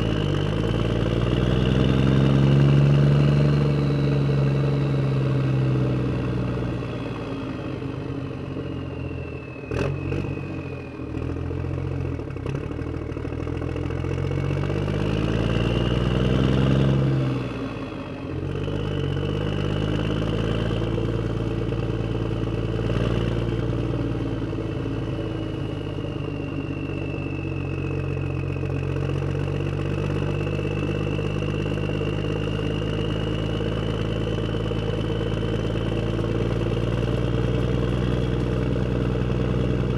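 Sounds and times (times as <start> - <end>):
excavator motor whining: 18.3 - 39.9.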